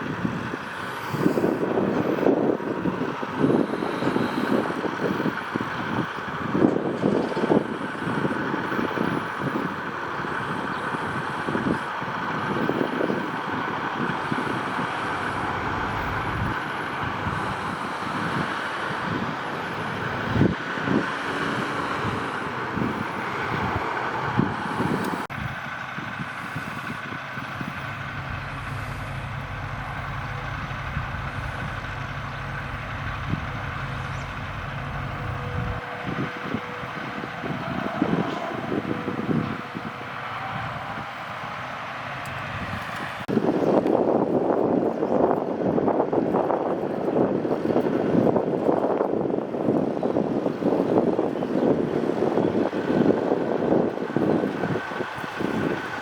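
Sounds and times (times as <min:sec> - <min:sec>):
vehicle traffic rumble: 0:00.0 - 0:56.0.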